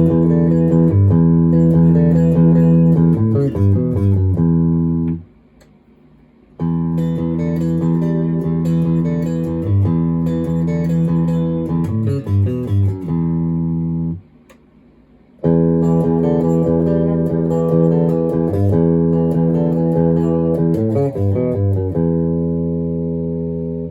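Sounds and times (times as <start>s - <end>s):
distorted electric guitar chords: 0.0s - 5.2s, 6.6s - 14.2s, 15.4s - 23.9s.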